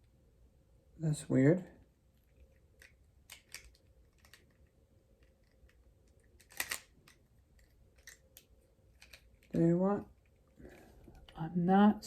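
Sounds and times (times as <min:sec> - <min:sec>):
plastic toy parts clicking: 0:02.4 - 0:09.6.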